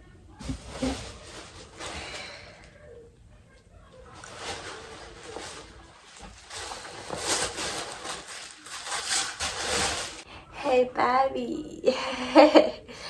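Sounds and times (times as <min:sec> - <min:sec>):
fabric bag rustling: 0:00.4 - 0:02.5, 0:04.1 - 0:10.3.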